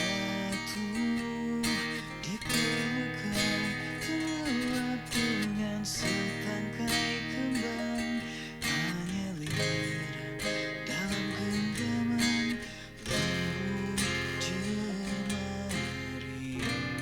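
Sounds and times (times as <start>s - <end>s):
acoustic guitar strumming chords: 0.0s - 17.0s
melodic line: 0.0s - 17.0s.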